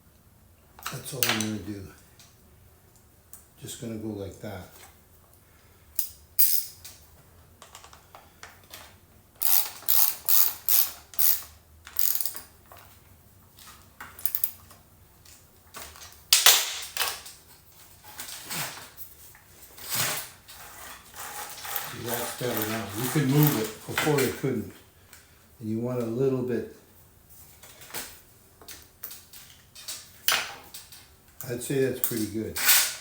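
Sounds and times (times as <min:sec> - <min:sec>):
chainsaw chain clicks and rasps: 0:09.4 - 0:12.5, 0:14.2 - 0:14.7, 0:19.9 - 0:24.3.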